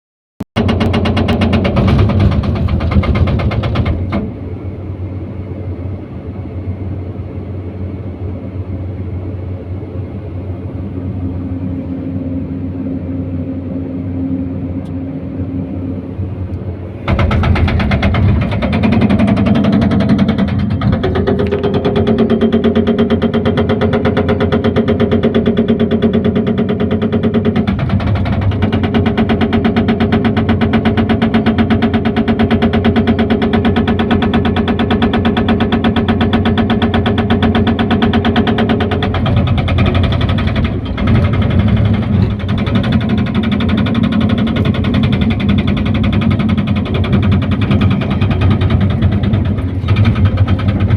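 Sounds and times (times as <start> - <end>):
hydraulic breaker hammering: 0.6 - 4.5, 17.0 - 50.9
excavator engine: 0.6 - 50.9.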